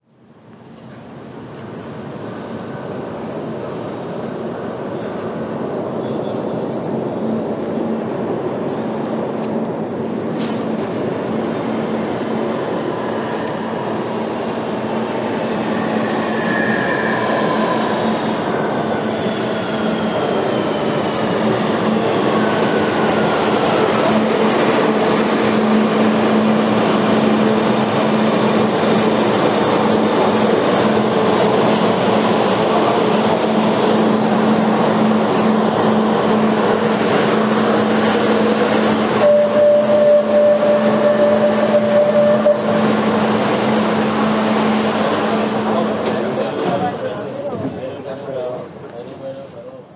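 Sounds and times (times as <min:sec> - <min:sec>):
train rumble and hiss: 0:00.3 - 0:49.9
steady tone: 0:11.4 - 0:46.5
train drive whine falling: 0:21.8 - 0:47.1.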